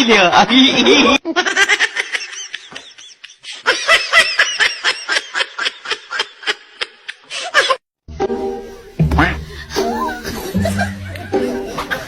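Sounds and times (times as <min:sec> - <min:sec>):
person laughing hard: 0:09.2 - 0:12.0.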